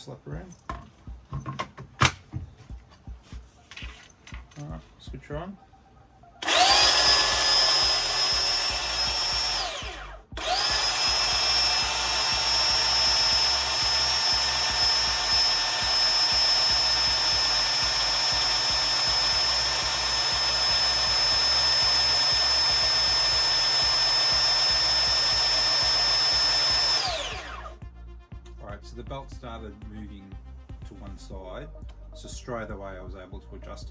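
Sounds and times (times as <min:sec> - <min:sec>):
belt sander motor whining: 0:06.4 - 0:27.8.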